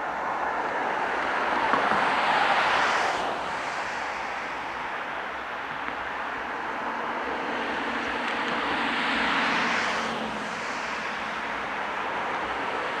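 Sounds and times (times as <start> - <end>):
vehicle passing by: 7.0 - 13.0.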